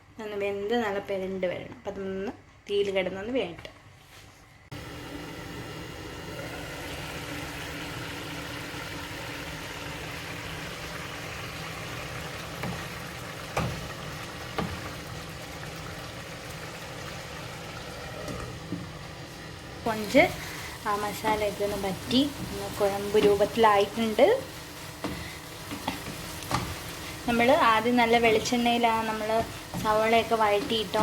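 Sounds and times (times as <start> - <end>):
sauce sizzling in a pan: 4.8 - 31.0
spoon knocking against pan: 13.5 - 13.9.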